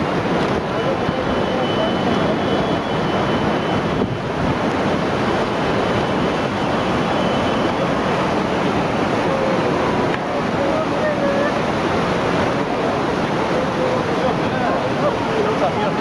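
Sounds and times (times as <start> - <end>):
floodwater rushing: 0.0 - 16.0.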